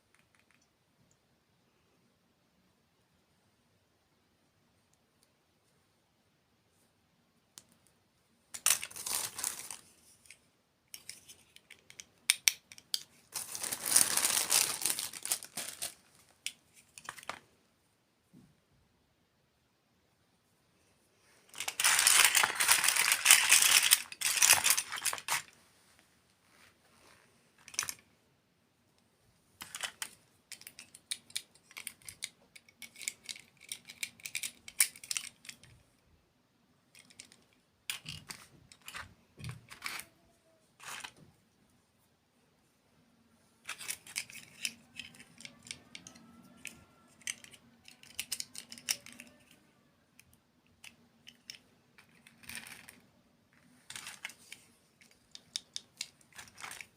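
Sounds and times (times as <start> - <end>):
packaging crackling: 8.6 - 9.9, 13.3 - 16.2, 21.5 - 25.5.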